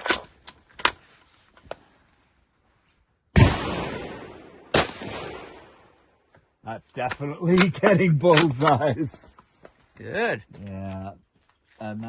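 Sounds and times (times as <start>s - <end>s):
rifle shot: 3.3s - 6.0s.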